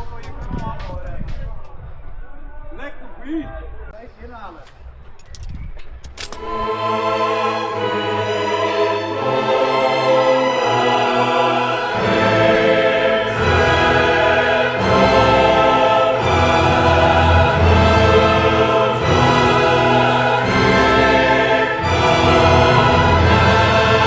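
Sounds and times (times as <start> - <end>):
choir singing: 6.4 - 24.0
orchestral music: 6.4 - 24.0.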